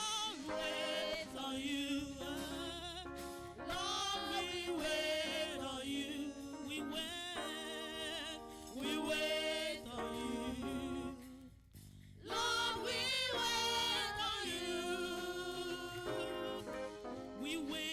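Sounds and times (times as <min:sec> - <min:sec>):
voices singing gospel song: 0:00.0 - 0:17.9.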